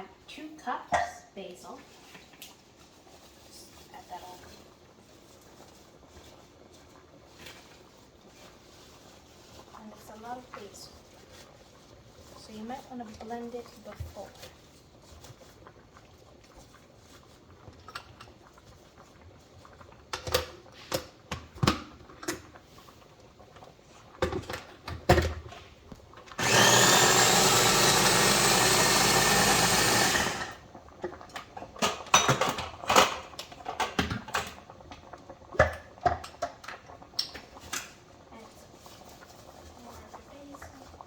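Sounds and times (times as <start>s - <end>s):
blender jar and lid clatter: 26.4s - 30.6s
electric blender running: 26.4s - 30.6s.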